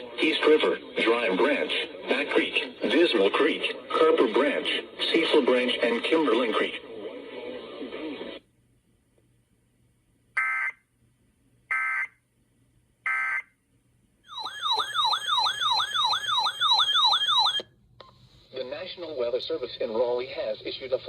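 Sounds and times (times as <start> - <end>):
warbling siren attention tone: 14.3 - 17.6.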